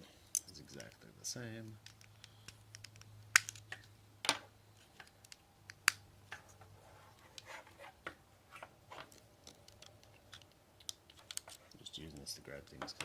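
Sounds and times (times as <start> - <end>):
plastic toy parts clicking: 1.8 - 3.9, 9.1 - 11.6.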